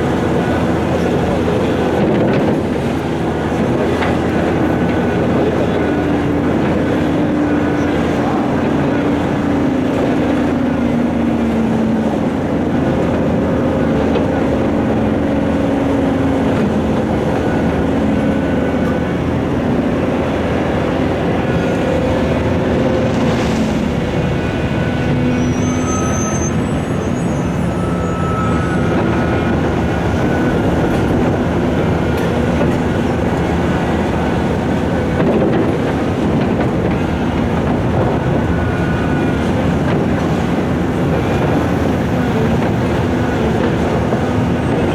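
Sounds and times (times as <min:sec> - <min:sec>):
heavy diesel machinery running: 0:00.0 - 0:44.9
high metallic squeals: 0:20.2 - 0:34.6.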